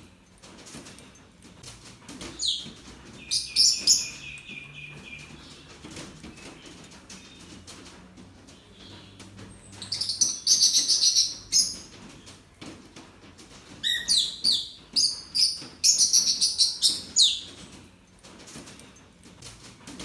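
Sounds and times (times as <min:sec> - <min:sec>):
small birds chirping: 0:02.1 - 0:12.7, 0:13.6 - 0:17.9.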